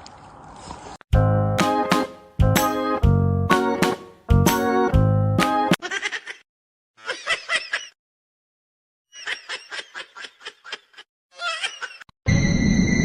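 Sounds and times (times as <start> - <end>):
person giggling: 5.8 - 6.4, 7.0 - 8.0, 9.2 - 12.1.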